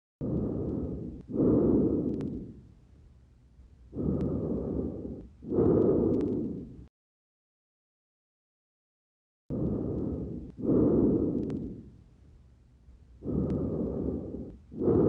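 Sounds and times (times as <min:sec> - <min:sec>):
breath sounds through stethoscope: 0:00.2 - 0:02.7, 0:03.9 - 0:06.9, 0:09.5 - 0:12.0, 0:13.2 - 0:15.0.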